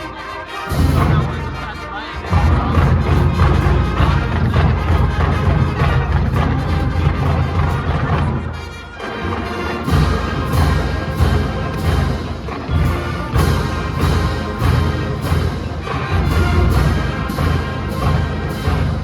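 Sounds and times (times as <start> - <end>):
marching band playing: 0.0 - 19.0
steady drum strokes: 0.7 - 19.0.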